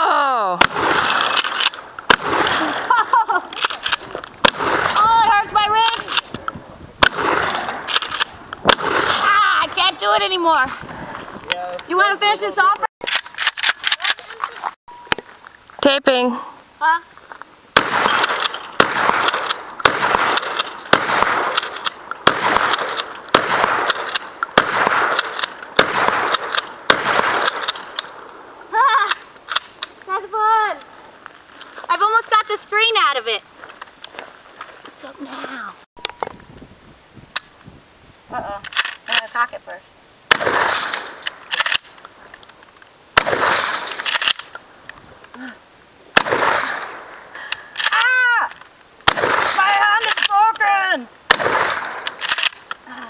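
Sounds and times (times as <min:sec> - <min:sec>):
shotgun shots echoing: 0:00.6 - 0:06.2, 0:07.0 - 0:09.3, 0:17.8 - 0:28.2, 0:40.3 - 0:41.8, 0:43.2 - 0:44.4, 0:46.2 - 0:47.3, 0:49.0 - 0:50.3, 0:51.3 - 0:52.5
shotgun pump clicks: 0:03.6 - 0:04.3, 0:07.9 - 0:08.3, 0:13.0 - 0:14.5, 0:26.3 - 0:26.7, 0:27.4 - 0:28.2, 0:29.1 - 0:30.0, 0:40.9 - 0:42.6, 0:43.9 - 0:44.6, 0:50.0 - 0:50.7, 0:52.0 - 0:52.8.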